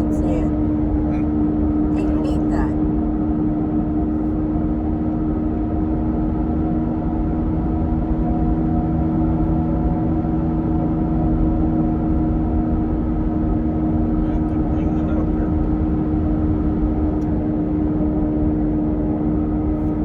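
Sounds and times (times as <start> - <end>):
car engine and road noise: 0.0 - 20.0.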